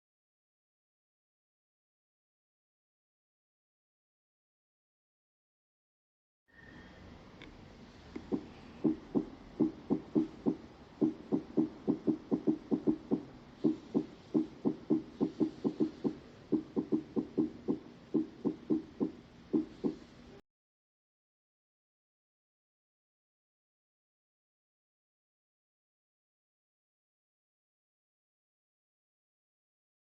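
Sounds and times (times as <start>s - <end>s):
heartbeat thuds: 8.2s - 20.1s.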